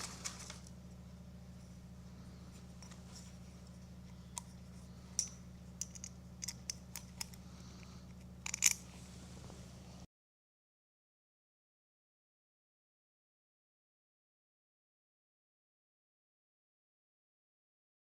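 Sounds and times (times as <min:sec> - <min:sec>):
steady low hum: 0:00.0 - 0:10.1
metal hardware clicking: 0:05.1 - 0:07.4, 0:08.4 - 0:08.9.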